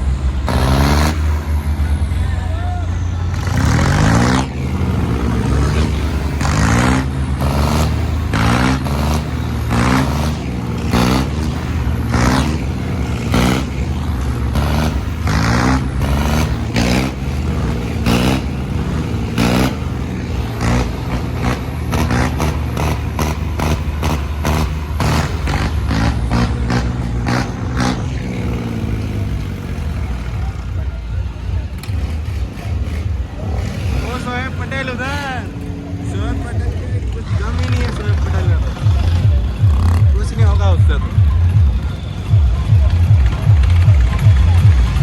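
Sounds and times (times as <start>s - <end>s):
tractor diesel engine under load: 0.0s - 45.0s.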